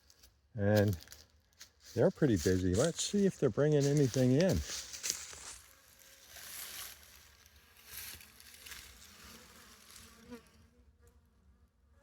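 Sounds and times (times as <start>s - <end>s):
honeybees buzzing: 2.5s - 11.0s.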